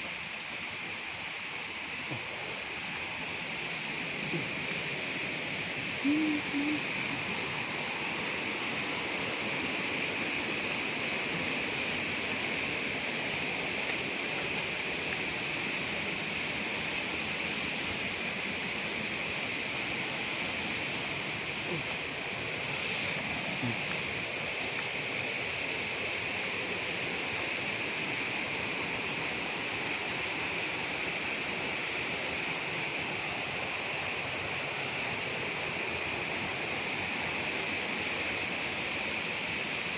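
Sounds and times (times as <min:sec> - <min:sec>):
water rushing: 0:00.0 - 0:39.9
low hoot-like call: 0:05.8 - 0:07.6, 0:21.5 - 0:22.0.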